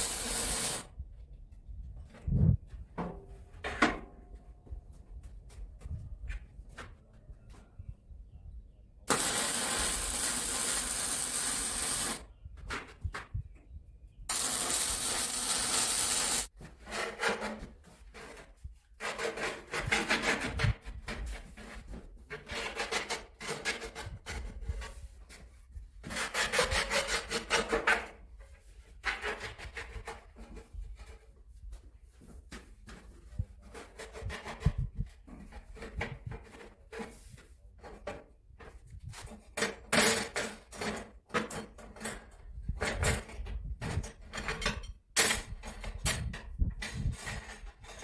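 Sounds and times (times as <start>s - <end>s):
hand tool scraping a surface: 0.0s - 0.8s, 9.1s - 12.2s, 14.3s - 31.3s, 46.8s - 48.0s
loud hissing bursts: 0.0s - 0.9s, 9.1s - 12.2s, 14.3s - 16.5s.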